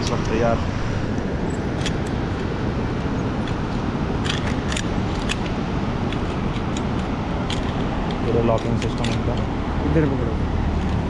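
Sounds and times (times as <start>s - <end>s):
outdoor background noise: 0.0s - 11.0s
metal harness clips clicking: 1.4s - 9.5s.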